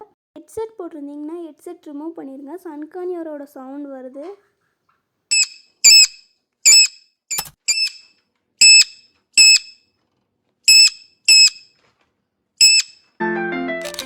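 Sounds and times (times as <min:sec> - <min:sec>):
parrot screeching: 0:05.3 - 0:06.9.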